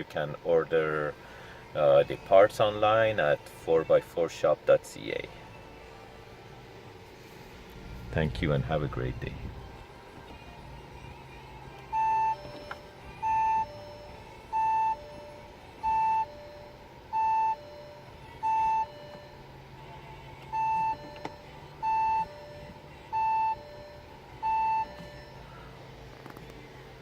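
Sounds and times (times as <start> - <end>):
low steady hum: 0.0 - 27.0
parking sensor beeps: 11.8 - 26.5.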